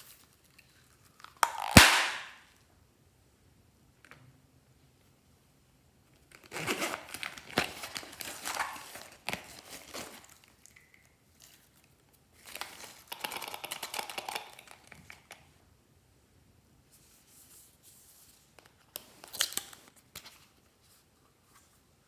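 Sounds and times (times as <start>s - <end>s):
plastic packaging crinkling: 0.0s - 2.4s, 6.3s - 11.5s.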